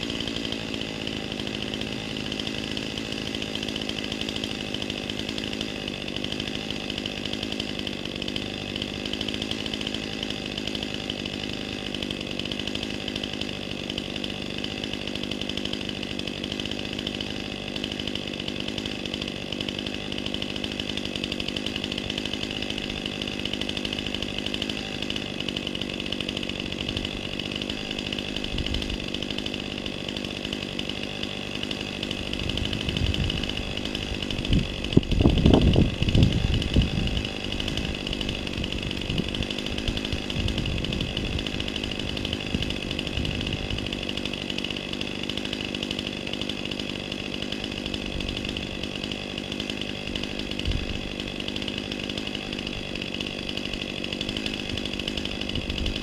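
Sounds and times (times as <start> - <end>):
chainsaw engine running: 0.0 - 56.0.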